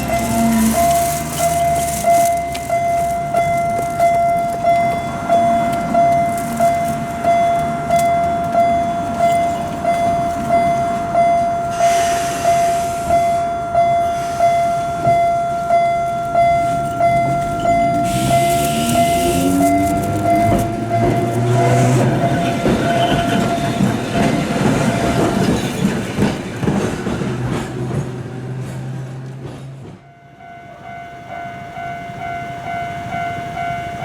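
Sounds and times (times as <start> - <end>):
electric train motor whine: 0.0 - 2.8, 17.3 - 25.4
hiss: 11.7 - 13.2, 18.0 - 19.6.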